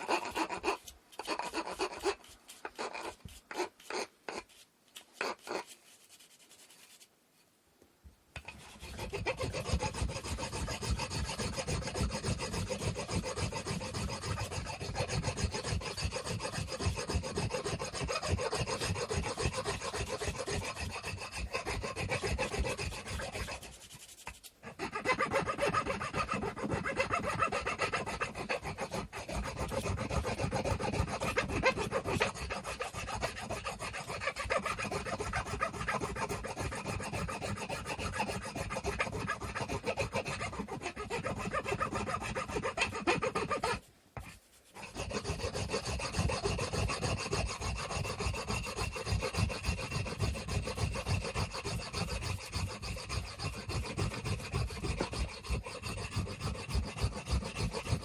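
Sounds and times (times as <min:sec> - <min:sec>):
sandpaper rasping on wood: 0:00.0 - 0:07.1, 0:08.4 - 0:58.0.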